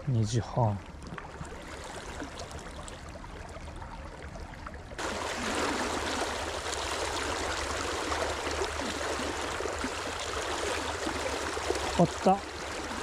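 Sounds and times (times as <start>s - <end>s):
river water flowing over stones: 5.0s - 13.0s.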